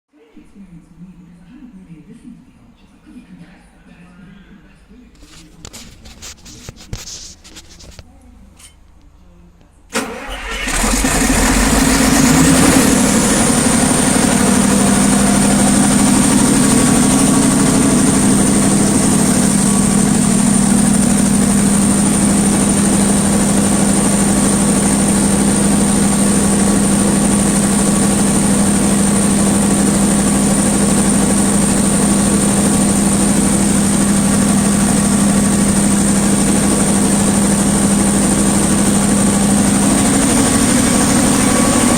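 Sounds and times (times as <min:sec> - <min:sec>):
diesel generator running: 0:09.9 - 0:41.9
high whine: 0:10.8 - 0:41.9.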